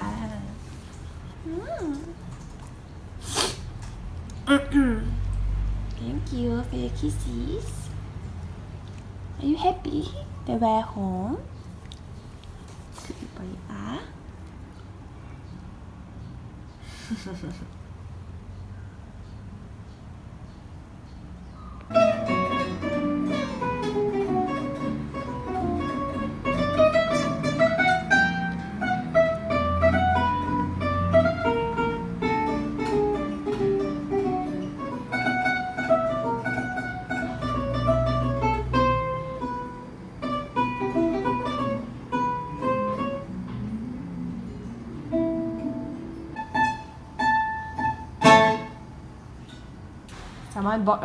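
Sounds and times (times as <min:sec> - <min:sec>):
plucked guitar-like instrumental tune: 0:21.9 - 0:49.0.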